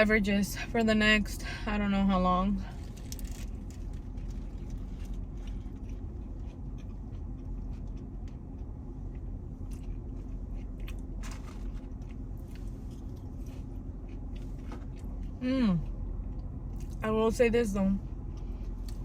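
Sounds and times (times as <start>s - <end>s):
steady low hum: 0.0s - 19.0s
food crunching: 2.8s - 15.4s
person chewing food: 2.8s - 17.0s.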